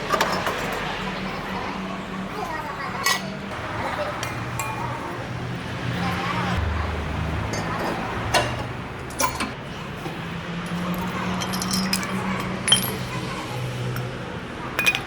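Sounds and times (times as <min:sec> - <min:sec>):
metal tools clinking: 0:11.2 - 0:13.2.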